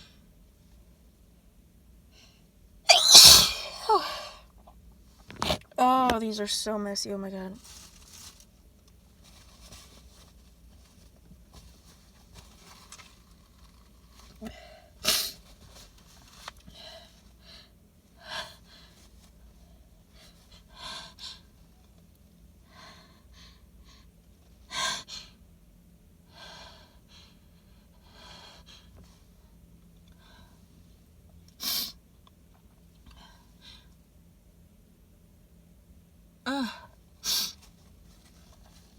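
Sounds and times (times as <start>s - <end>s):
sharp breaths: 2.9s - 4.4s
woman sneezing: 2.9s - 4.4s, 36.5s - 37.5s.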